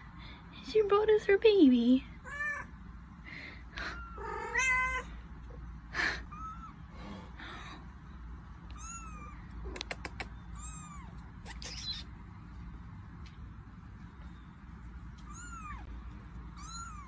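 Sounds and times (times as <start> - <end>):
cat meowing: 4.0 - 5.1, 8.7 - 9.4, 10.6 - 12.0, 15.3 - 15.9, 16.6 - 17.0
sharp clicks: 9.7 - 10.4.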